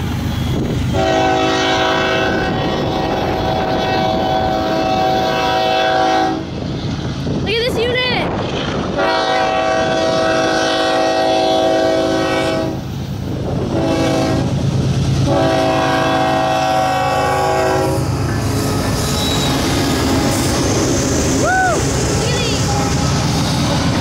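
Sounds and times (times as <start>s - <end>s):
locomotive engines rumbling: 0.0s - 24.0s
locomotive air horn: 0.9s - 6.5s, 9.0s - 12.8s, 13.7s - 14.6s, 15.2s - 19.7s.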